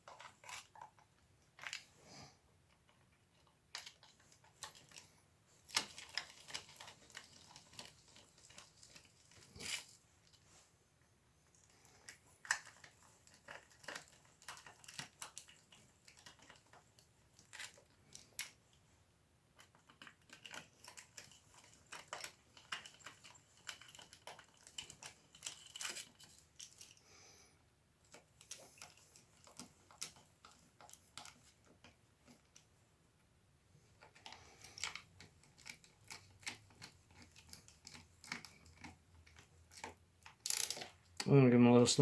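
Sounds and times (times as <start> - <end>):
tools and bolts clicking: 2.9 - 10.4, 19.6 - 27.0, 34.0 - 41.3.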